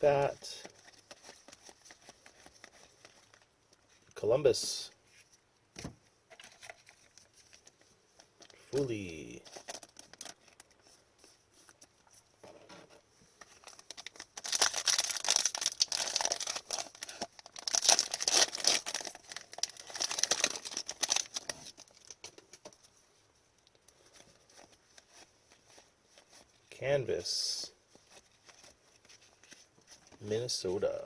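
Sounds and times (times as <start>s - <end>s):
handling of cards: 0.0s - 31.0s
plastic wrapper tearing and crinkling: 8.4s - 10.8s, 13.5s - 22.7s.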